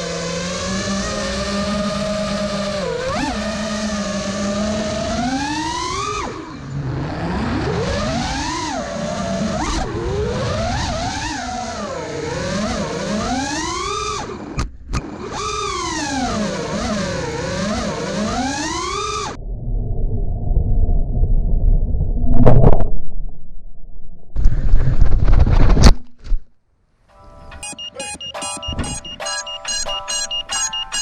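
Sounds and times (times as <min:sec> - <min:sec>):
drone motors whining: 0:00.0 - 0:19.5.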